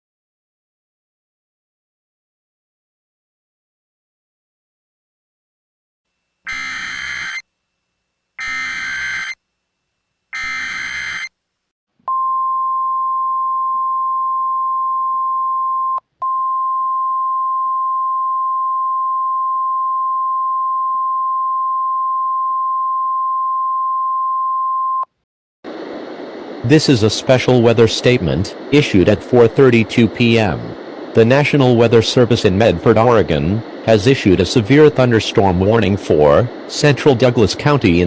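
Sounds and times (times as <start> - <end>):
buzzy data bursts: 6.4 - 7.4, 8.4 - 9.4, 10.3 - 11.3
steady warning alarm tone: 6.4 - 7.5, 8.4 - 9.4, 10.3 - 11.4.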